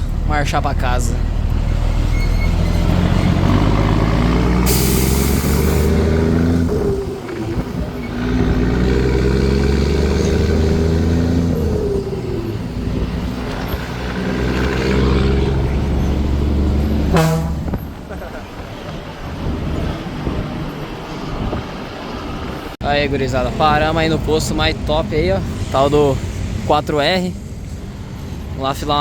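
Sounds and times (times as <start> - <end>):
truck diesel engine pulling away: 0.0 - 28.5
air hiss: 4.6 - 6.0.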